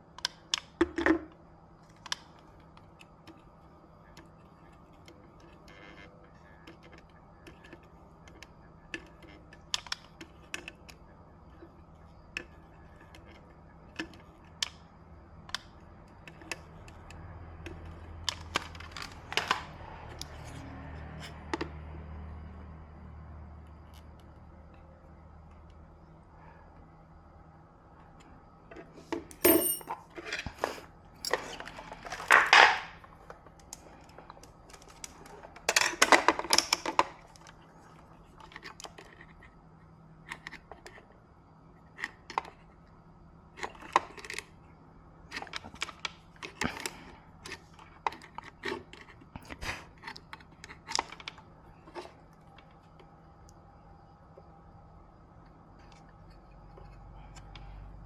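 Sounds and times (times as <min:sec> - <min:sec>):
small metal objects clinking: 0:29.4 - 0:30.0.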